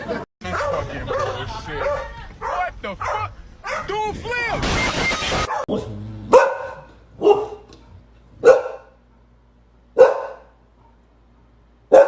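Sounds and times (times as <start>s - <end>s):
dog barking: 0.4s - 3.9s, 5.5s - 7.8s, 8.4s - 9.0s, 10.0s - 11.0s.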